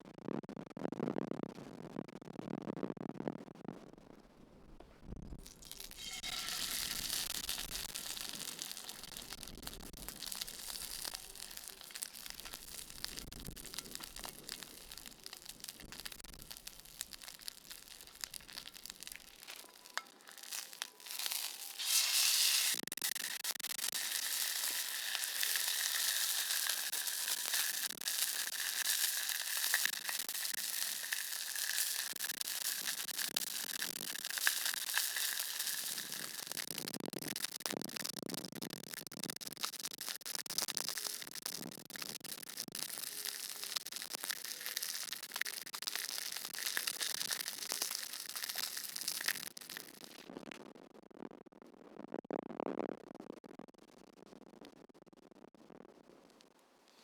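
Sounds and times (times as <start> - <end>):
fish sizzling in a frying pan: 5.3 - 50.3.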